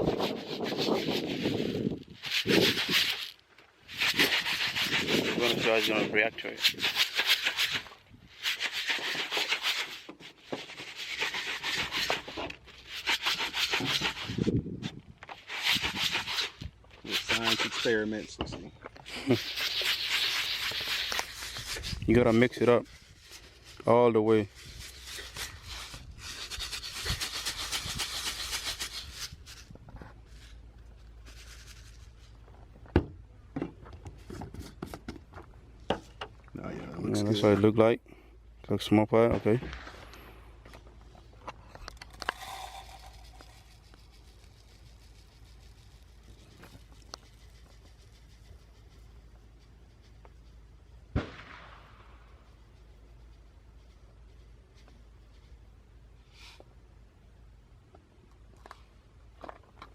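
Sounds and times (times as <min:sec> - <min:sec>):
gritty mixture scraping in container: 0:00.0 - 0:14.6, 0:15.3 - 0:30.6, 0:41.8 - 0:49.1
granules rubbing and rattling: 0:00.0 - 0:32.9, 0:38.9 - 0:50.8.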